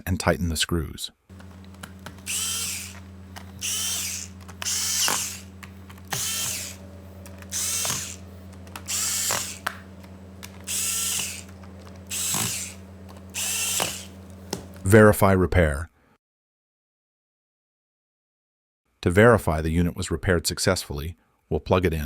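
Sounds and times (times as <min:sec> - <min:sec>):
electric screwdriver whirring: 0:01.3 - 0:14.9.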